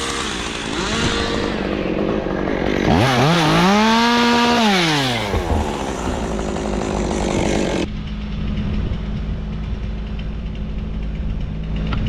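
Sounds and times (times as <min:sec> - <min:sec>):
chainsaw engine idling: 0:00.0 - 0:07.9
chainsaw revving down: 0:00.0 - 0:07.9.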